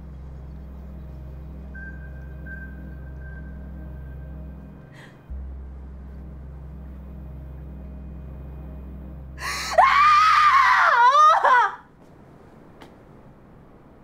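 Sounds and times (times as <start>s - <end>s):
low dark drone: 0.0s - 14.0s
high anguished human scream: 9.6s - 11.9s.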